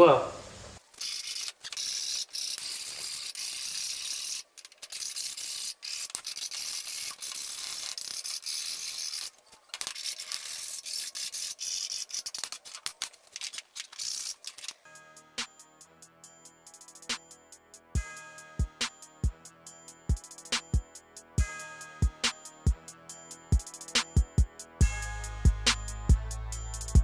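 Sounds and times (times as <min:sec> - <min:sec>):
file rasping on metal tube: 0:01.0 - 0:12.8.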